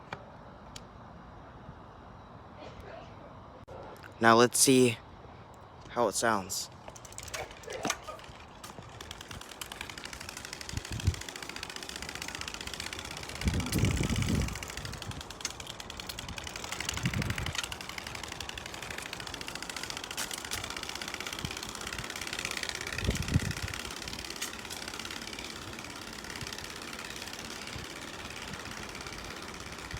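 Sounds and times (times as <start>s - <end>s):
card flapping against bicycle spokes: 6.7s - 29.9s.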